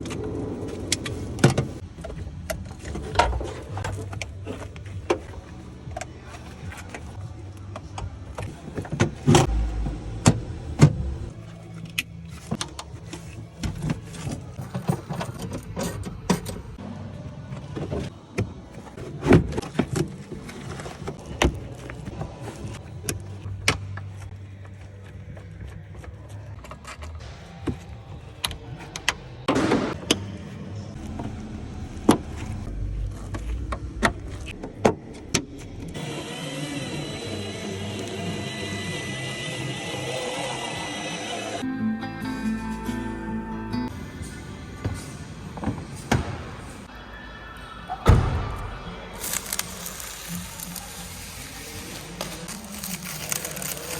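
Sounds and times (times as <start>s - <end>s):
rustling: 49.2s - 53.9s.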